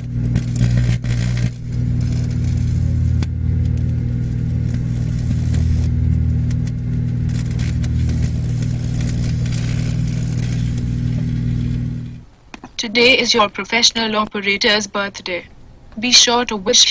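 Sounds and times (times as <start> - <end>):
microwave oven humming: 0.0 - 12.4
sharp electrical snaps: 0.0 - 12.4.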